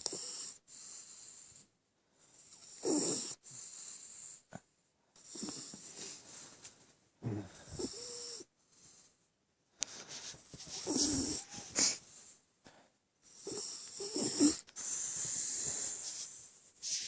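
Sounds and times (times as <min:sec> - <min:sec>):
dog snoring: 0:00.0 - 0:01.6, 0:02.3 - 0:04.6, 0:05.2 - 0:06.2, 0:07.2 - 0:09.0, 0:10.7 - 0:12.0, 0:13.2 - 0:16.1.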